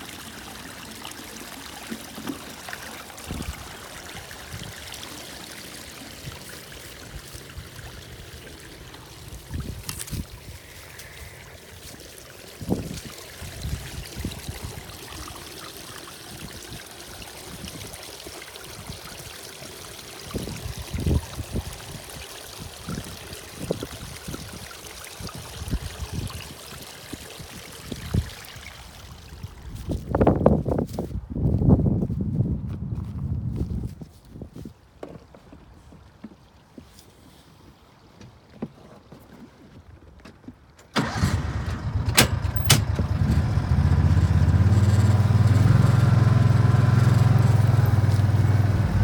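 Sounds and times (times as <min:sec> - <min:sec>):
water trickling at a drain: 0:00.0 - 0:31.6, 0:42.6 - 0:49.0.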